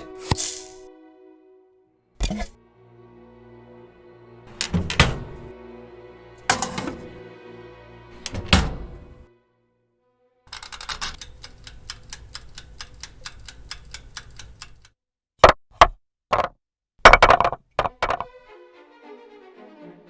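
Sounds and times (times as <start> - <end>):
rapid sharp clicks: 10.6 - 15.0.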